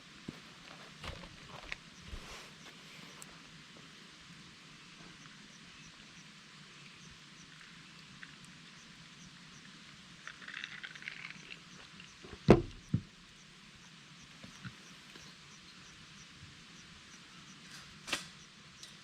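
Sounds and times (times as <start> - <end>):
campfire crackling: 0.0 - 19.0
dull knocks: 12.3 - 13.1.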